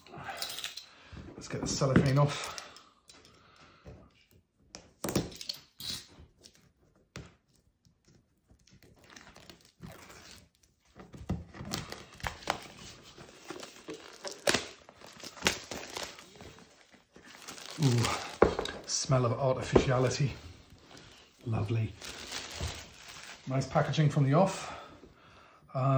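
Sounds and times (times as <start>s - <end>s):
shrink-wrap crinkling and tearing: 8.6s - 24.5s.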